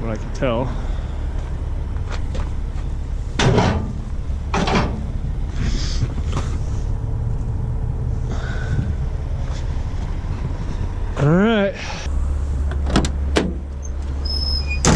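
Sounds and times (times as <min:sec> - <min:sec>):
steady low rumble: 0:00.0 - 0:14.4
heavy clunks: 0:01.4 - 0:06.6, 0:12.6 - 0:14.2.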